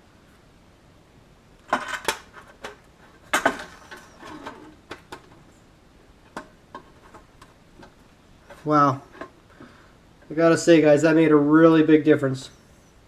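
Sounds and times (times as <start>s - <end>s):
sheet metal parts clanking: 1.7s - 5.4s.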